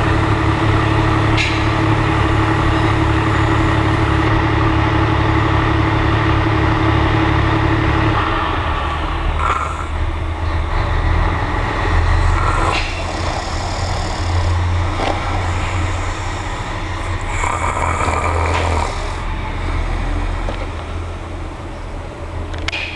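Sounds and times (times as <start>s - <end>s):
man snoring: 9.4s - 10.1s, 12.0s - 19.4s.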